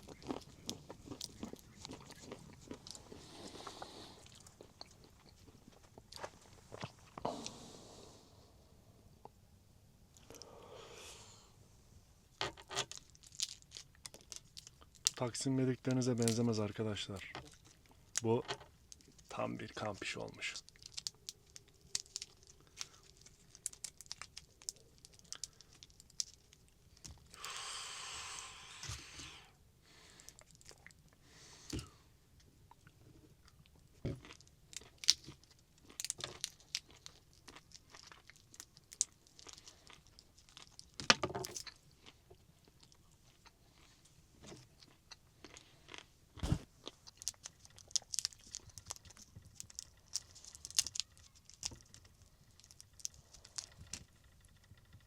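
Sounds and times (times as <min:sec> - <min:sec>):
person chewing crunchy food: 0:00.0 - 0:07.6, 0:12.9 - 0:15.2, 0:20.6 - 0:27.7, 0:30.2 - 0:31.9, 0:32.7 - 0:54.5.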